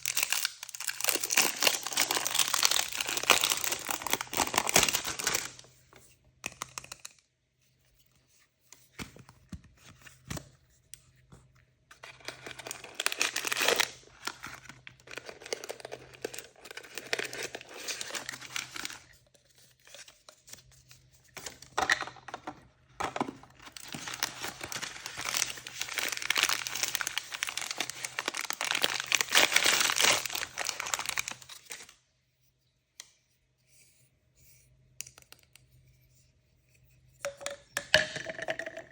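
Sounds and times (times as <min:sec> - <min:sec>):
packaging tearing and crinkling: 0:00.0 - 0:05.6, 0:12.0 - 0:19.1, 0:23.6 - 0:31.9.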